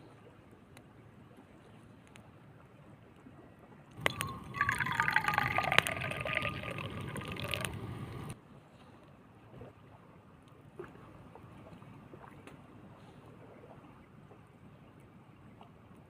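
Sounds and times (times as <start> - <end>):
liquid pouring: 4.0 - 8.4.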